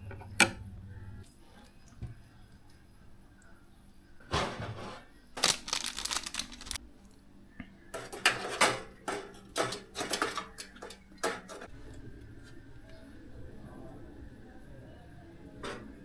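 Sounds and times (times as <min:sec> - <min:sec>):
computer parts clattering: 0:05.4 - 0:06.8, 0:08.0 - 0:11.7.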